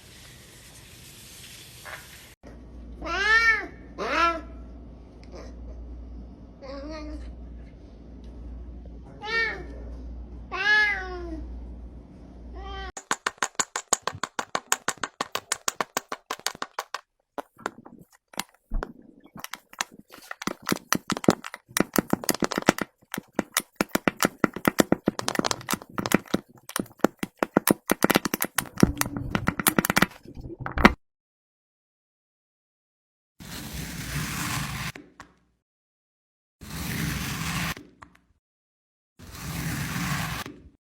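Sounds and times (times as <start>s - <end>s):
sharp clicks and crackles: 13.0s - 31.0s.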